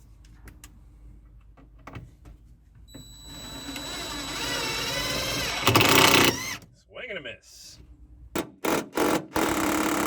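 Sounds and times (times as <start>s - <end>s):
power drill motor running: 3.0s - 6.6s.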